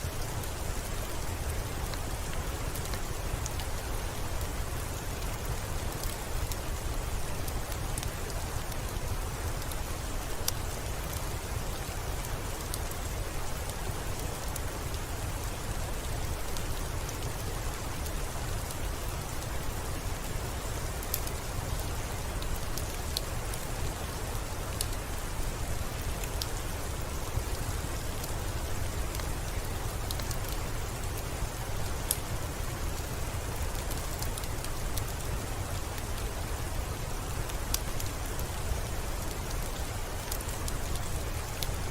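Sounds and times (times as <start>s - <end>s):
soft rain: 0.0s - 41.9s
fireplace crackling: 36.9s - 41.9s.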